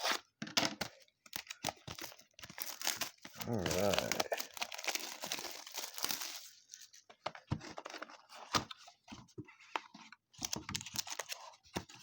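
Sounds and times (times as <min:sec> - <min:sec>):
foil packs rustling and crinkling: 0:01.4 - 0:07.0.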